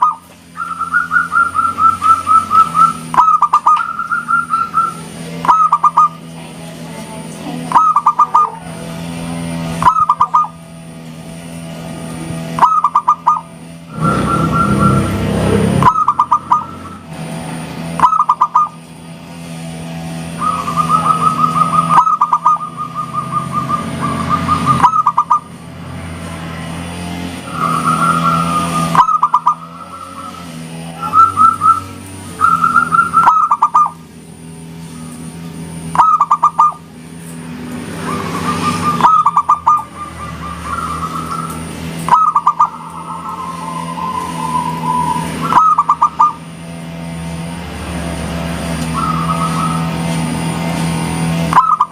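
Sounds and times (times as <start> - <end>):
dove cooing: 0.0 - 6.3, 7.6 - 8.9, 9.8 - 10.6, 12.5 - 17.1, 18.0 - 18.8, 20.3 - 25.6, 27.8 - 34.0, 35.9 - 36.9, 38.0 - 46.4
steady low hum: 0.0 - 51.9.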